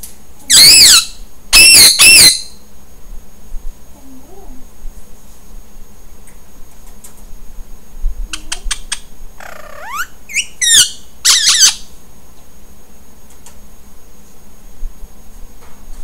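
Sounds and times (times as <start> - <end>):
parakeet chirping and screeching: 0.5 - 2.5, 9.4 - 11.8.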